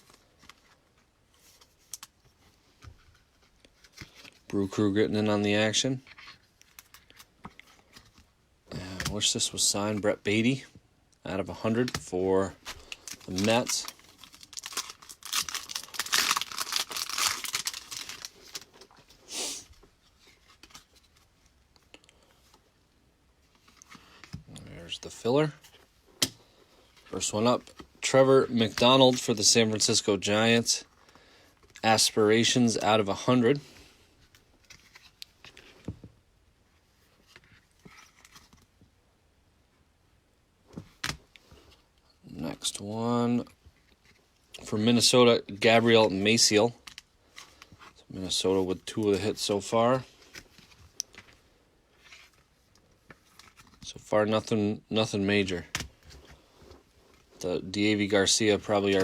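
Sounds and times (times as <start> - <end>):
trading cards rustling and sliding: 11.5 - 21.6, 55.4 - 59.0
foil wrapper tearing: 12.8 - 18.6.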